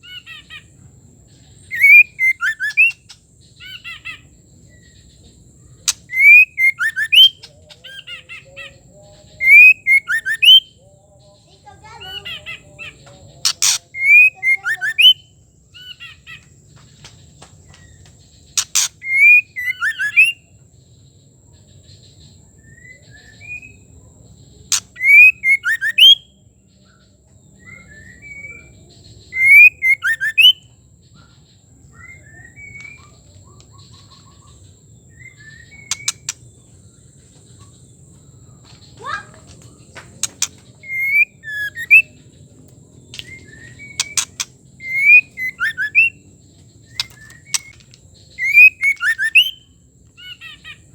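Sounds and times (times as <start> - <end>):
bird calling with clicks and whistles: 1.7 - 4.3, 5.8 - 8.2, 9.4 - 10.7, 13.0 - 15.2, 16.0 - 20.4, 24.7 - 26.3, 29.3 - 30.7, 35.2 - 36.5, 38.7 - 50.8.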